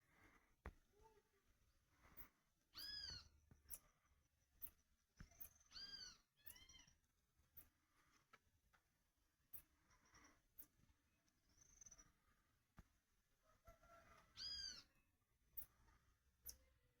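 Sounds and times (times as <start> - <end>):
monkey high-pitched cries: 14.4 - 14.9.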